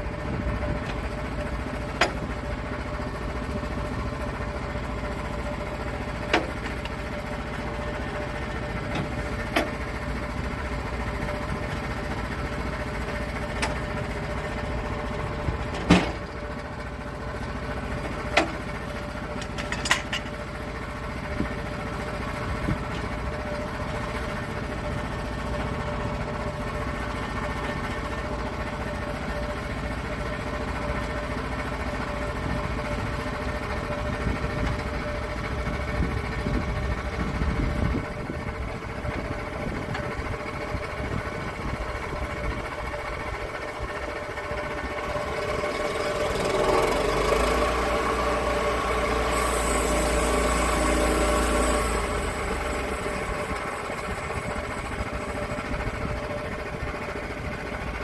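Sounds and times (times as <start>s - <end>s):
sawmill engine running: 0.0s - 58.0s
sharp knocks and clanks: 19.4s - 20.4s.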